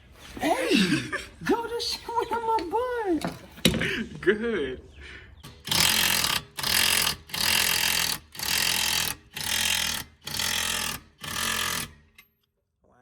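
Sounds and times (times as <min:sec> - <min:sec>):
power wrench whirring: 0:05.4 - 0:12.3.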